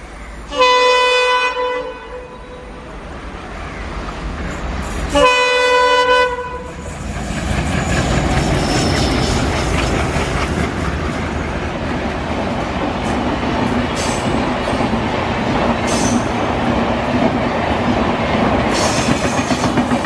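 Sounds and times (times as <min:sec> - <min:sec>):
train rumbling past: 0:00.0 - 0:20.0
locomotive horn blast: 0:00.5 - 0:02.9, 0:05.1 - 0:06.8.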